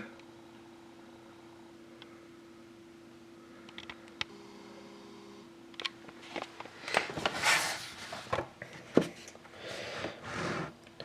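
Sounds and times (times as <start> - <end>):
faint steady hum: 0.0 - 11.0
rustling and scraping: 6.1 - 9.4.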